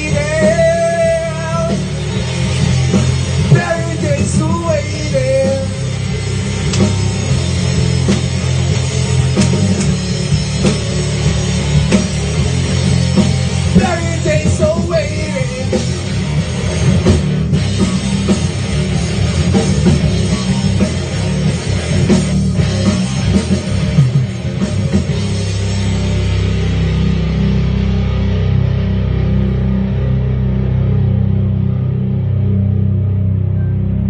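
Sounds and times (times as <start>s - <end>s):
drum kit: 0.0s - 31.6s
bass guitar: 0.0s - 34.0s
heavy distorted guitars: 0.0s - 34.0s.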